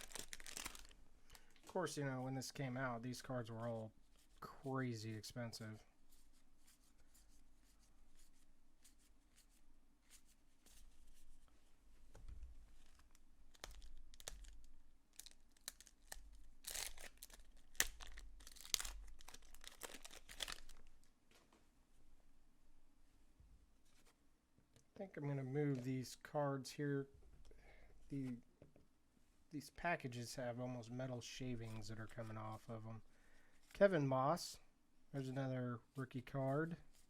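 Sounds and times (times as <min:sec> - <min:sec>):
foil wrappers tearing and crinkling: 0:00.0 - 0:00.9, 0:13.1 - 0:14.6, 0:15.2 - 0:20.9
cards rustling: 0:00.0 - 0:01.8, 0:12.7 - 0:21.0.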